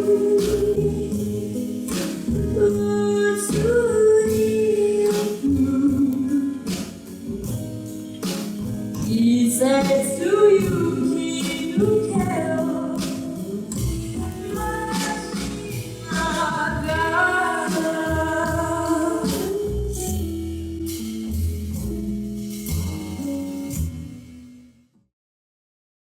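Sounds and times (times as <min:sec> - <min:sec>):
girl singing a slow ballad: 0:00.0 - 0:07.7, 0:09.0 - 0:20.4
sustained instrumental accompaniment: 0:12.7 - 0:24.6.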